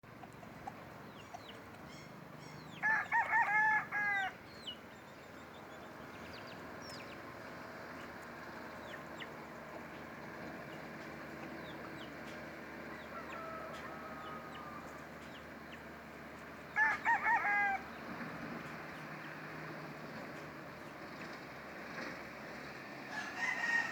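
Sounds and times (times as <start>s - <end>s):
rooster crowing: 2.7s - 4.4s, 12.9s - 15.2s, 16.7s - 18.0s, 23.0s - 23.9s.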